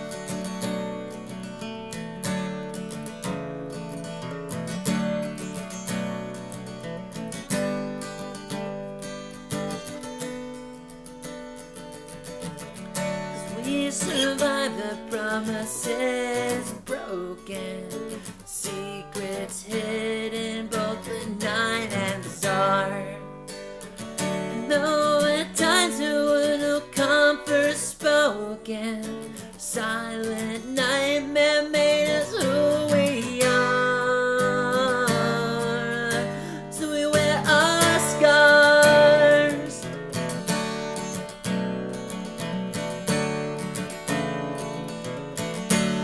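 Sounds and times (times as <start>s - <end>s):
acoustic guitar strumming: 0.0s - 46.0s
woman singing: 13.2s - 42.2s.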